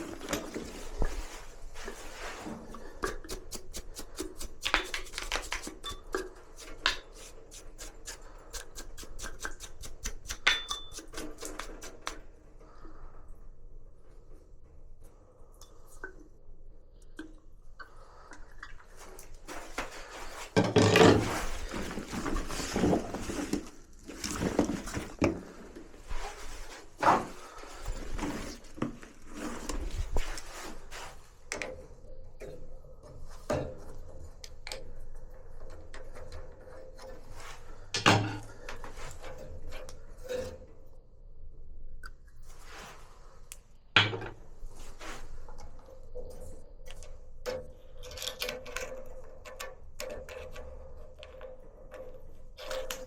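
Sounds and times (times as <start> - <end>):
hands handling objects: 0.0 - 12.3, 18.9 - 31.8.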